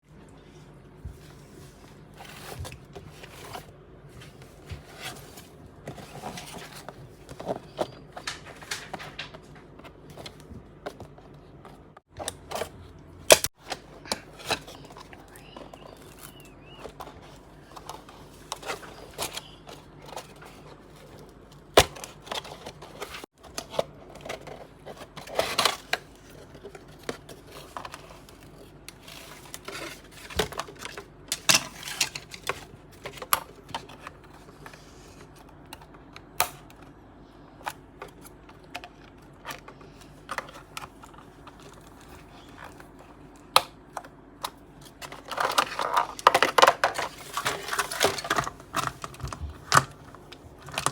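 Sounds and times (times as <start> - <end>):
plastic packaging rustling: 1.1 - 12.7, 13.5 - 36.0, 44.7 - 50.9.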